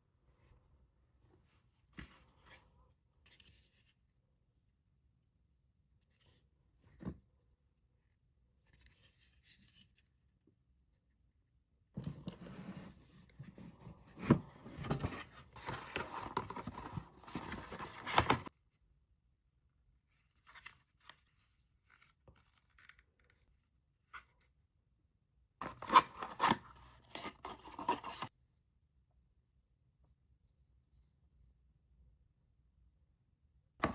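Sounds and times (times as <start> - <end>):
packaging rustling and tearing: 14.8 - 18.5.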